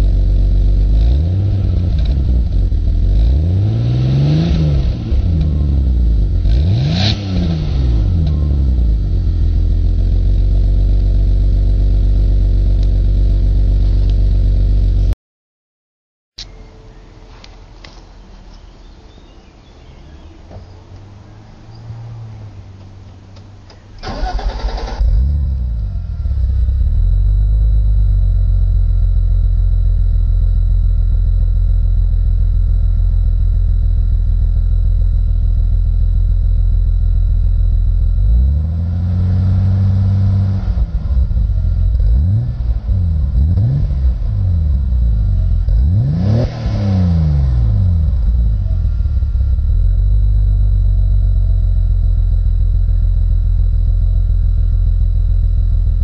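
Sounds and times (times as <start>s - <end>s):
car engine starting and idling: 0.0s - 15.2s, 20.2s - 56.0s
engine revving: 0.7s - 15.1s, 24.0s - 28.6s, 38.0s - 50.8s.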